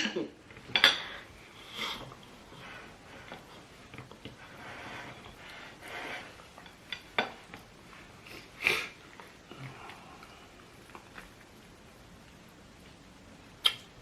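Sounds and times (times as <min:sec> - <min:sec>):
cutlery clinking against a plate: 0:00.6 - 0:01.3.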